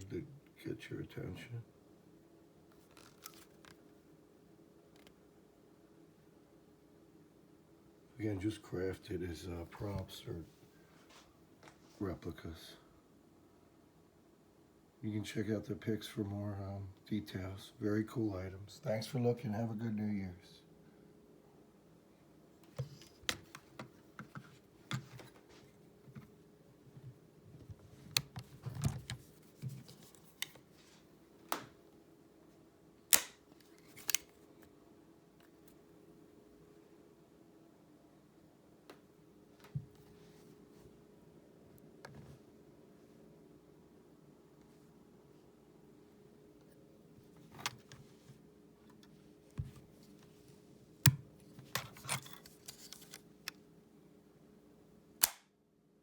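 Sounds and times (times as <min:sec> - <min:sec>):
pistol locks clicking and snapping: 0:33.1 - 0:33.4, 0:55.2 - 0:55.5.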